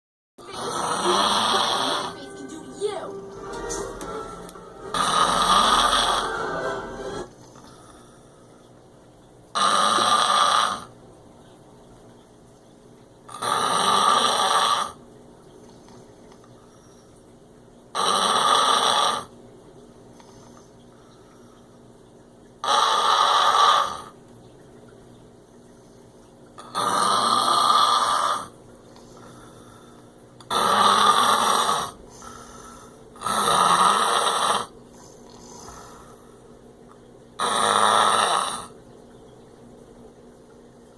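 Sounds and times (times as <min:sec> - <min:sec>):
man snoring loudly: 0:00.4 - 0:02.2, 0:04.8 - 0:07.2, 0:09.6 - 0:10.9, 0:13.3 - 0:15.0, 0:18.0 - 0:19.3, 0:26.6 - 0:28.5, 0:30.5 - 0:32.0, 0:33.2 - 0:34.7, 0:37.4 - 0:38.8.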